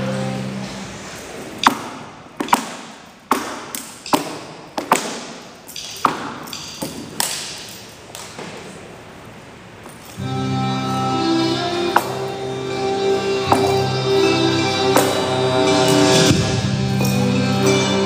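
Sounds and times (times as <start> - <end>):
dancer's percussive claps and stamps: 1.6 - 8.4.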